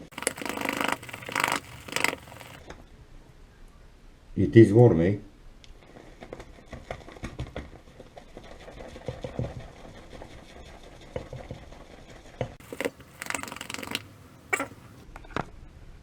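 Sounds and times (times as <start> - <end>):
shaving brush whipping lather in bowl: 0.0 - 2.6, 12.6 - 15.0.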